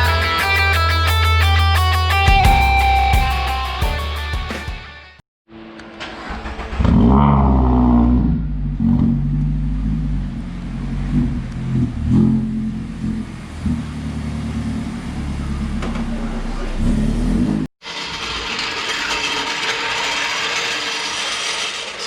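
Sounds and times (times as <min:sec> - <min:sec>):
car engine revving: 0:06.0 - 0:17.7.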